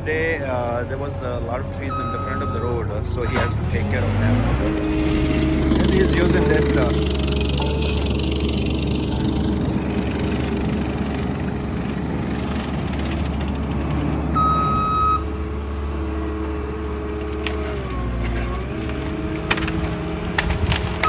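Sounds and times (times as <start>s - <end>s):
diesel engine running: 0.0s - 21.0s
short high beep: 1.9s - 3.6s.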